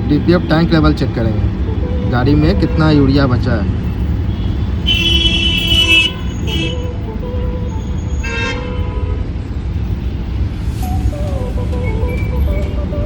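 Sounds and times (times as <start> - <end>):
vehicle horns honking: 4.2 - 9.4
low engine rumble: 9.1 - 13.0.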